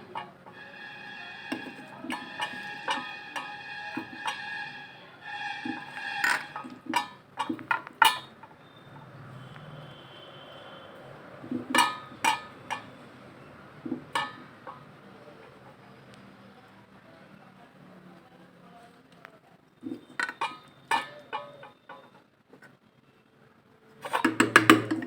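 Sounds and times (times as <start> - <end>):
metal spoon clinking on a pot: 1.5 - 4.6, 5.6 - 8.4, 11.7 - 12.9, 13.9 - 14.7, 19.9 - 22.1, 24.1 - 25.0.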